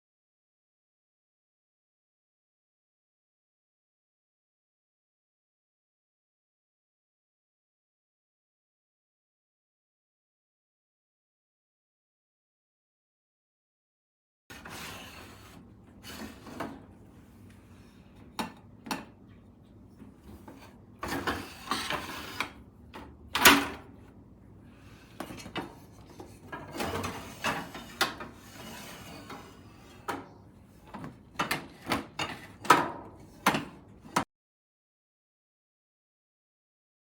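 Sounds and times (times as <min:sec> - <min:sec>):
knocks clicks and scrapes on a rack: 0:14.5 - 0:19.2, 0:19.9 - 0:24.0, 0:24.8 - 0:34.2.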